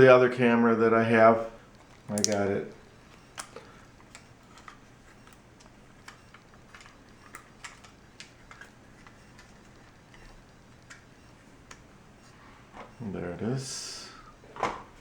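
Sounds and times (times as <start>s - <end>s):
small plastic clicks: 1.7s - 2.5s.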